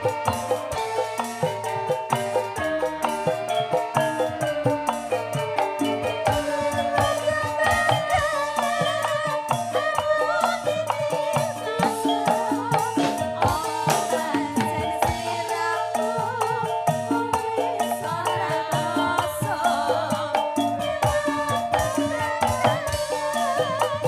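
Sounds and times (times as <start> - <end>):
quick percussion strokes: 0.0 - 24.0
wavering melody line: 0.0 - 24.0.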